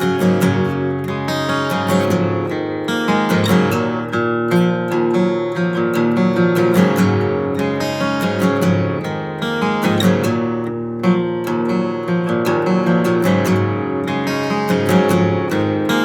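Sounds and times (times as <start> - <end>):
acoustic guitar riffs: 0.0 - 16.0.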